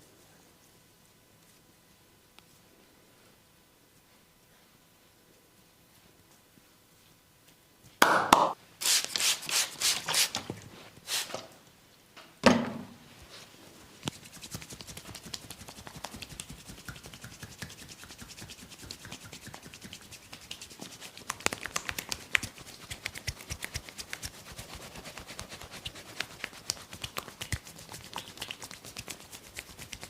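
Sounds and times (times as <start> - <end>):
hand slapping skin: 8.0 - 9.4, 14.0 - 24.6, 25.2 - 30.0
hands rubbing skin: 13.2 - 30.0.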